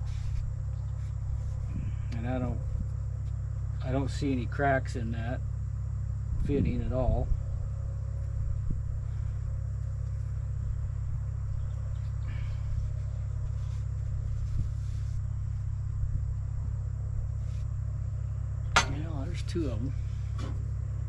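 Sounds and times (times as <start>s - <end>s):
steady low rumble: 0.0s - 21.0s.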